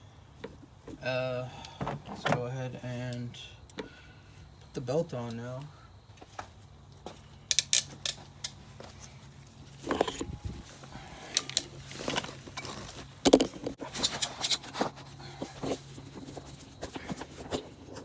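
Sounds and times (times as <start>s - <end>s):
clicks and knocks of parts handled: 7.5s - 9.1s, 9.7s - 18.0s
rubber and metal parts rubbing: 8.9s - 18.0s.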